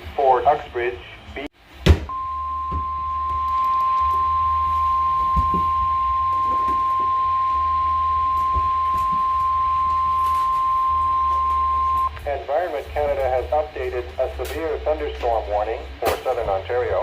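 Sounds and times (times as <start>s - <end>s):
steady high-pitched alarm tone: 2.1s - 12.2s
low hum: 2.1s - 17.0s.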